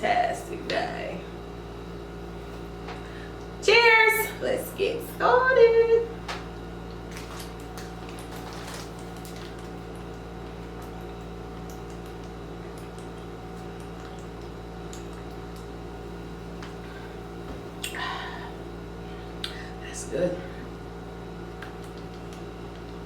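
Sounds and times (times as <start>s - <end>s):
low electrical hum: 0.0s - 23.0s.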